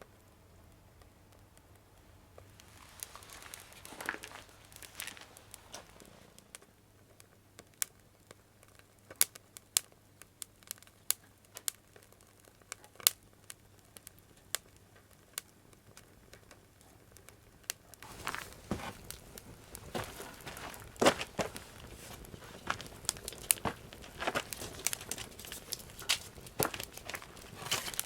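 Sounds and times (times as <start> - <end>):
wood fire crackling and popping: 0.2 - 28.0
rustling and crinkling: 2.4 - 6.7, 17.9 - 28.0.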